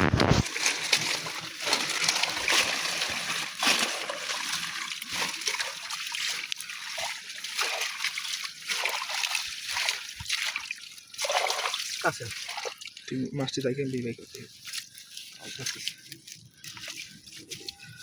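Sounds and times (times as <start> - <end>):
water splashing in shallow water: 0.0 - 18.0.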